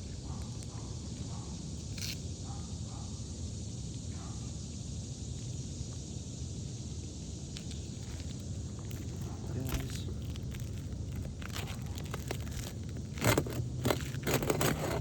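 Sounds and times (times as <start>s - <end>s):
low outdoor rumble: 5.9s - 15.0s
short scrape: 12.4s - 15.0s.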